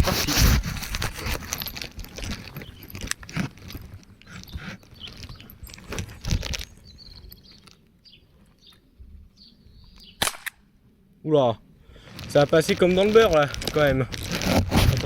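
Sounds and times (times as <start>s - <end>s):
crunching handling noises: 0.0s - 8.9s, 11.9s - 15.0s.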